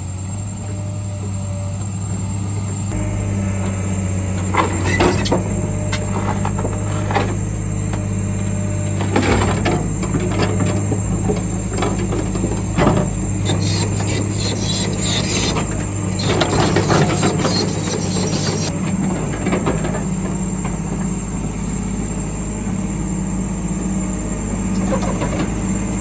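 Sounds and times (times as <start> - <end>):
heavy machine engine running: 0.0 - 26.0
machine arm squealing: 13.3 - 18.8.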